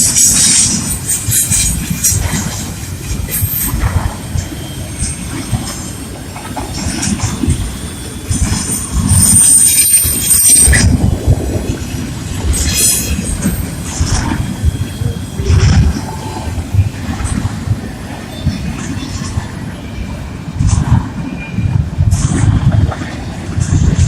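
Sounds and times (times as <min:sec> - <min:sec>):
train wheels rumbling on rail: 0:00.0 - 0:24.0
high-pitched wheel squeal: 0:07.1 - 0:11.2.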